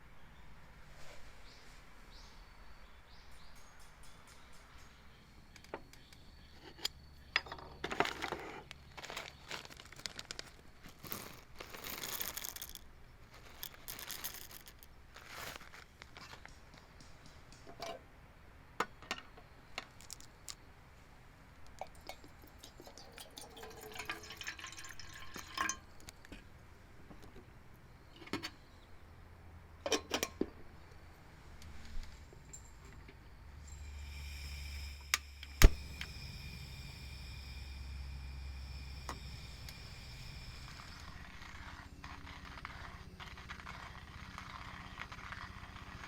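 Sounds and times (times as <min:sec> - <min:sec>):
packet rustling and tearing: 0:08.2 - 0:16.5
liquid pouring: 0:21.8 - 0:25.8
cups clinking: 0:21.8 - 0:26.4, 0:29.9 - 0:30.6.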